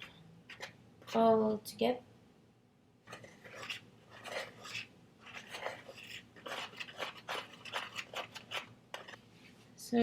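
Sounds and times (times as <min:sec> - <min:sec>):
utensil scraping in mixing bowl: 0:00.0 - 0:01.5, 0:03.1 - 0:09.3.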